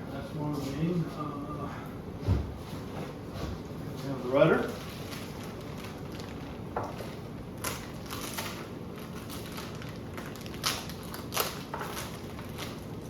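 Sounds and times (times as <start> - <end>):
plastic wrap crinkling: 4.0 - 13.0.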